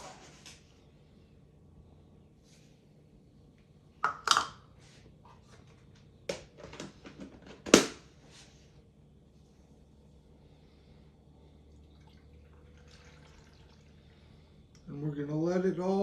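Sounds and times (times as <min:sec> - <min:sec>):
kitchen utensils clattering: 0:04.0 - 0:04.6.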